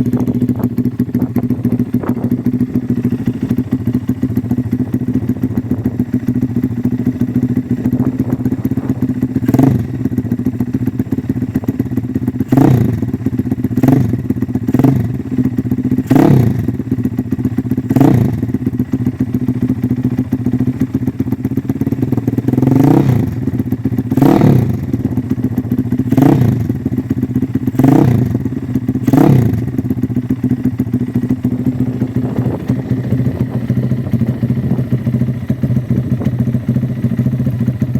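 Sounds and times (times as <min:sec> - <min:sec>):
engine idling: 0:00.0 - 0:37.9
engine throttle revs: 0:08.1 - 0:10.0, 0:24.1 - 0:24.9.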